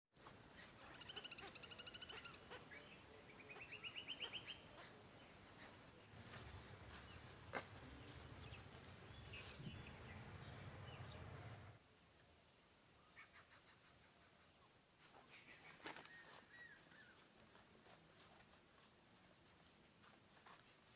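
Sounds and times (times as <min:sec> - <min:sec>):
bird chattering trill: 0:00.9 - 0:04.9.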